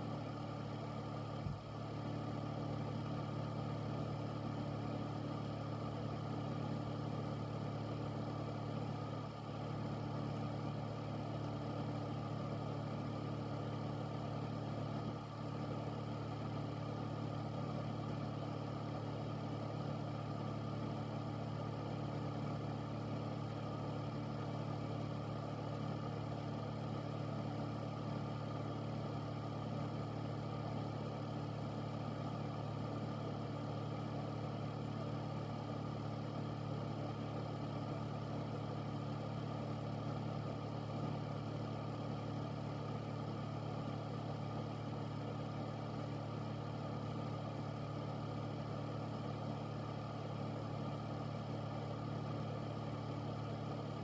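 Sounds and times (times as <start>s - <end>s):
air purifier running: 0.0s - 54.0s.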